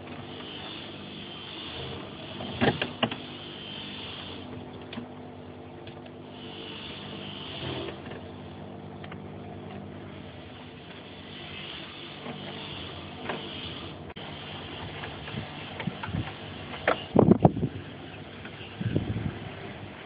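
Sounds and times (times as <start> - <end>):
screwdriver scraping hiss: 0.2 - 4.6, 6.3 - 8.2, 10.1 - 17.2.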